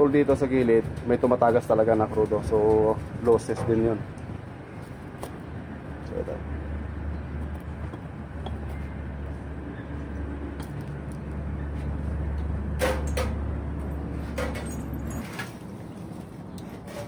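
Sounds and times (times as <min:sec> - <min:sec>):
sharp metallic clanks: 0:12.8 - 0:13.4.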